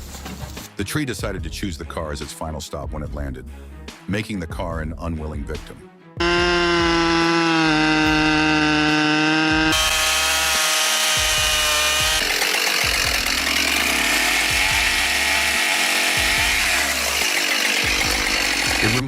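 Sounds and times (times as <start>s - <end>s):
chainsaw cutting through wood: 6.2s - 19.0s
chainsaw running at high revs: 6.2s - 19.0s.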